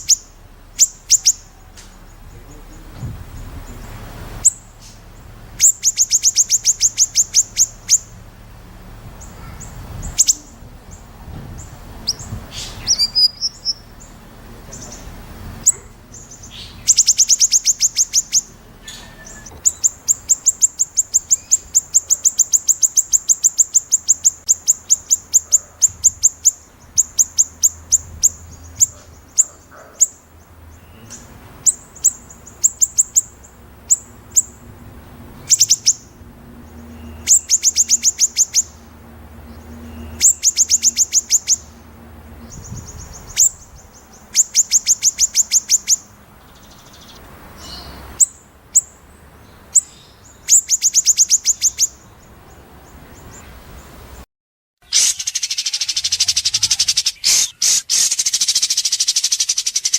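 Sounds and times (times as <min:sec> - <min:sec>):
bird singing rapid high notes: 0:00.0 - 0:08.3, 0:09.2 - 0:11.0, 0:11.6 - 0:34.6, 0:35.4 - 0:41.8, 0:42.4 - 0:52.2, 0:54.8 - 0:59.9.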